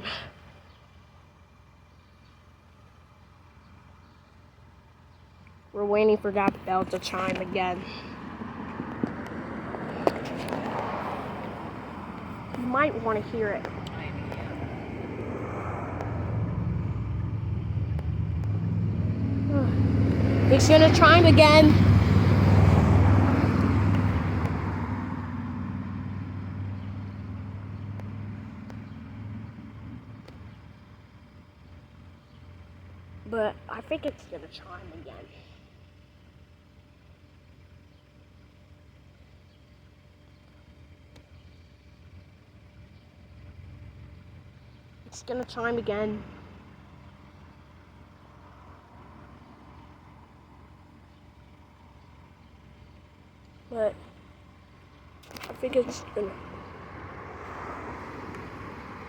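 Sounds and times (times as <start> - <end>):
motor vehicle passing: 5.8 - 36.3, 43.2 - 59.0.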